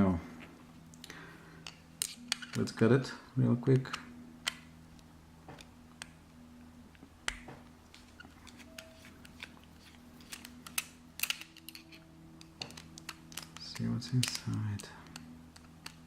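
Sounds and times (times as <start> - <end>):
faint low hum: 0.0 - 16.0
metal padlock clicking: 10.3 - 14.7.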